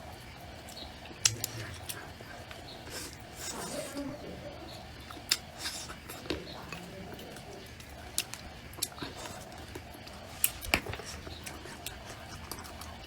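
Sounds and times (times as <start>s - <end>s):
chewing and mouth smacks: 0.6s - 3.8s, 5.0s - 13.0s.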